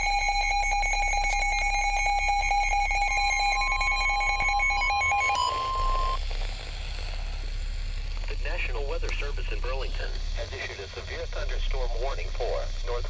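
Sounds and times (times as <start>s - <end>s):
pulsing electronic alarm: 0.0s - 6.2s
steady warning tone: 0.0s - 13.0s
radio hiss: 5.5s - 13.0s.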